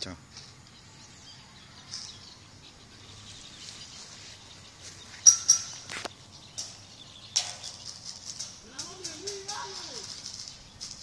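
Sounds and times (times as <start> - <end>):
faint high outdoor hiss: 0.0 - 11.0
sharp clicks: 7.4 - 11.0.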